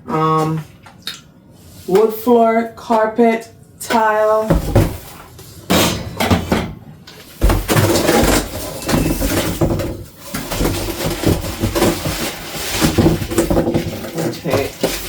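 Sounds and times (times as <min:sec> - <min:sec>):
packaging rustling and crinkling: 0:07.2 - 0:15.0
small knocks and clatter: 0:07.3 - 0:15.0.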